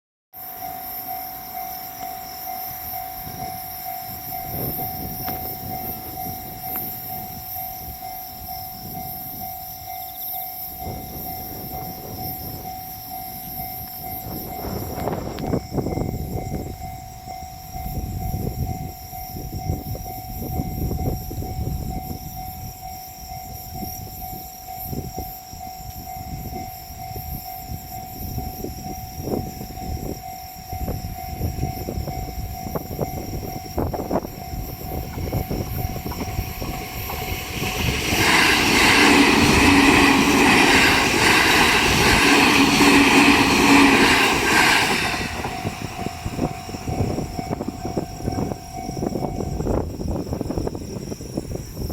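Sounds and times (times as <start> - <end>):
level-crossing warning bell: 0.4 - 51.2
train wheels rumbling: 30.8 - 50.8.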